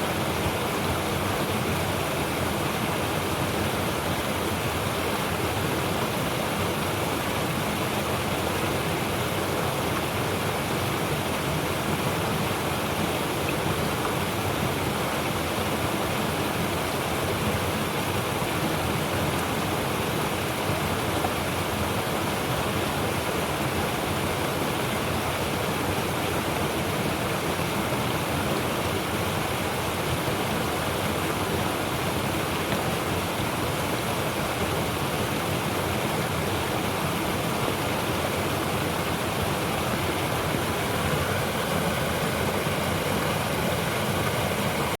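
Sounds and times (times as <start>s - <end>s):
stream rushing over rocks: 0.0s - 45.0s.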